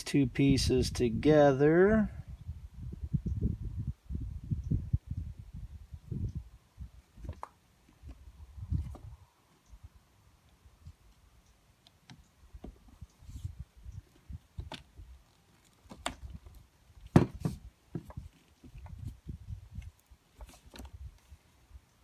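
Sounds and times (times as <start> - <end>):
soft handling noise: 11.8 - 21.5.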